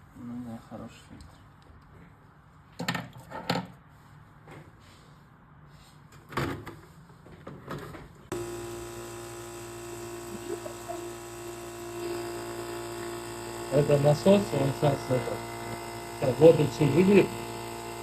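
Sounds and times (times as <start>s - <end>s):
water filter pump humming: 8.3s - 18.0s.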